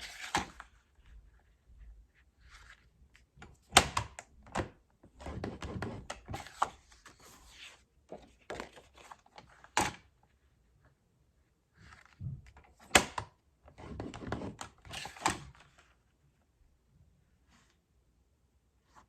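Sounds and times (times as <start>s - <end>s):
paper rustling scrapes: 0.0s - 0.7s.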